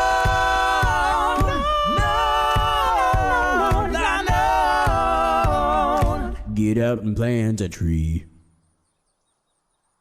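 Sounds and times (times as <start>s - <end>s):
steady low beat: 0.0s - 6.6s
a cappella group singing: 0.0s - 6.7s.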